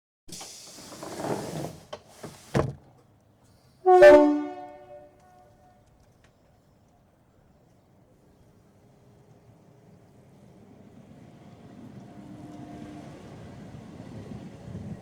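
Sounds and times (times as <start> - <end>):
train doors hissing and thudding shut: 0.3 - 3.0
two-tone train hooter blast: 3.8 - 5.2.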